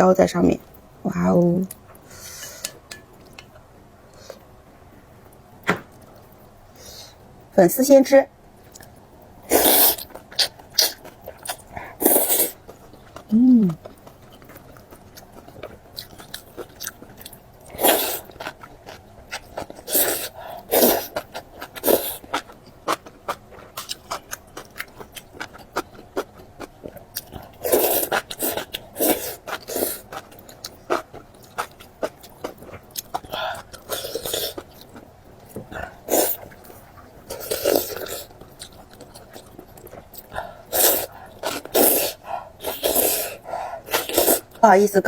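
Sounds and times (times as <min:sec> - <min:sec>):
soft wet chewing: 0:08.6 - 0:44.6
loud noodle slurps: 0:09.5 - 0:10.1, 0:12.0 - 0:12.6, 0:17.8 - 0:18.3, 0:19.8 - 0:21.2, 0:27.6 - 0:30.0, 0:40.7 - 0:44.5.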